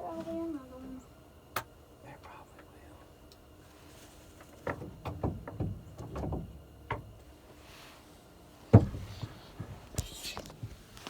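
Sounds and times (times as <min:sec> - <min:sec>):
knocks and clunks: 0:04.5 - 0:07.2, 0:08.7 - 0:10.0.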